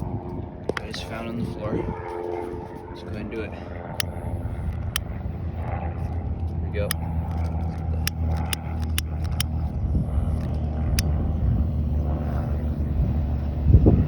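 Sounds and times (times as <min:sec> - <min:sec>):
sharp clicks: 0:06.9 - 0:09.6.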